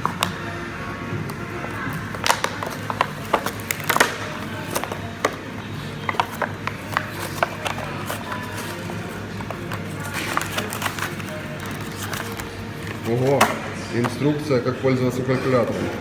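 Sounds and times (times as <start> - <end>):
background music: 0.0 - 16.0
packaging crackling and tearing: 1.3 - 13.6.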